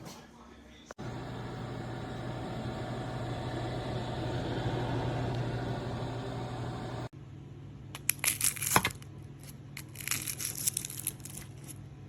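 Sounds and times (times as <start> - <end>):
air fryer fan running: 1.0 - 7.1
crinkling and crushing: 8.0 - 11.8.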